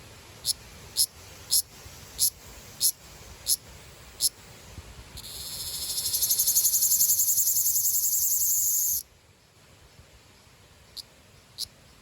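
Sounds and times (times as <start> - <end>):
cicada buzzing: 0.4 - 4.4, 5.2 - 9.0.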